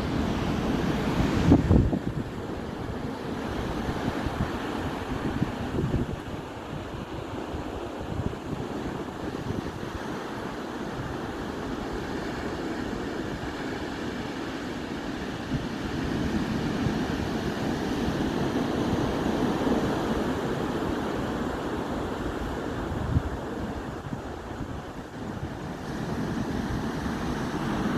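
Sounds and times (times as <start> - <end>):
wind on microphone: 0.0 - 13.9, 15.2 - 27.9
sea surf breaking: 9.2 - 27.9.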